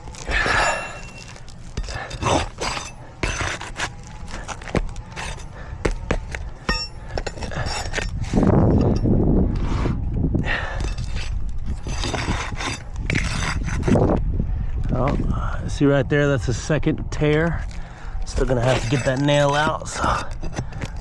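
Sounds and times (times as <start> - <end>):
sharp metallic clicks and scrapes: 0.0 - 9.9, 10.8 - 14.2, 17.2 - 21.0
metal bar prying out nails: 0.1 - 9.0.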